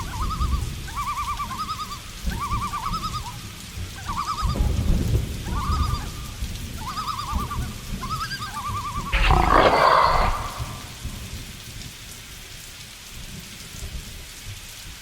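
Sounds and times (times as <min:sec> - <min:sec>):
warbling animal call: 0:09.2 - 0:11.0.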